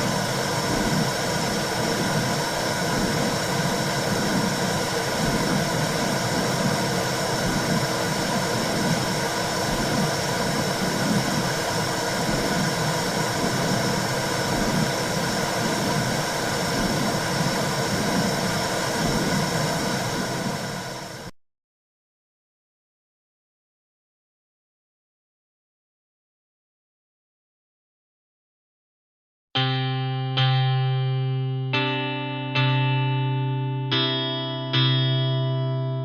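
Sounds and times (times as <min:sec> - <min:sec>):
womb whooshing with low pulse: 0:00.0 - 0:21.3.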